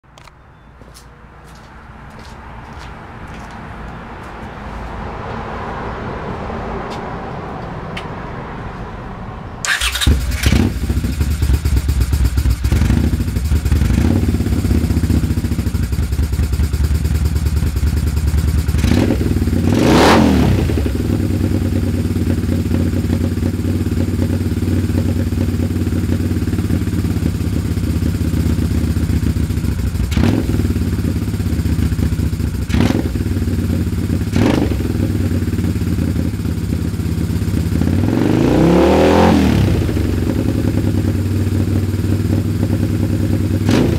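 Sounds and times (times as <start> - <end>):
motorcycle engine idling and revving: 9.6 - 43.9.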